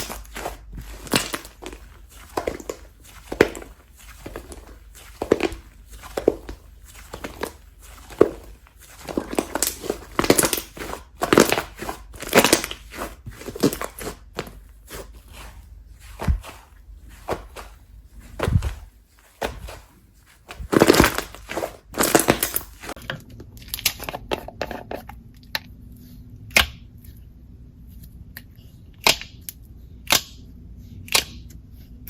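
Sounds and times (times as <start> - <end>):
slime squished by hand crackling: 0.0 - 23.0.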